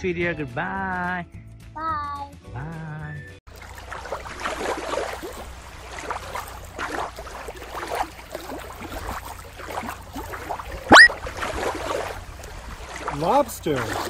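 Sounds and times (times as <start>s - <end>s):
small waves lapping: 3.5s - 14.0s.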